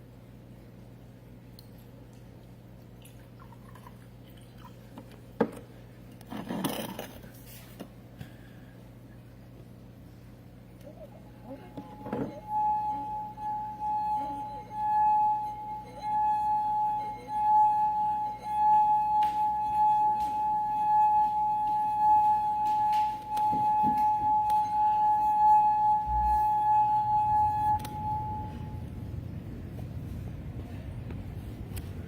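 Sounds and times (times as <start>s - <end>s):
wine glass rim ringing: 11.8s - 28.9s.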